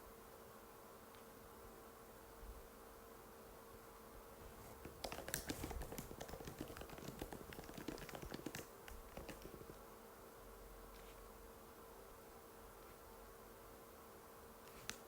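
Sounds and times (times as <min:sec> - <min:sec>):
faint steady hum: 0:00.0 - 0:15.0
light keyboard key clicks: 0:04.8 - 0:09.7.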